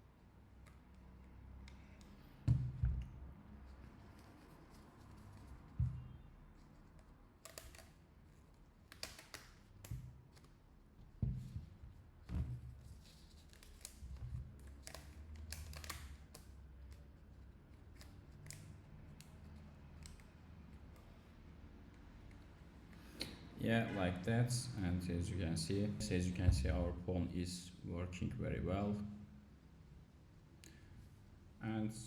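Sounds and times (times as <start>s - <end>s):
soft handling knocks: 11.0s - 12.8s.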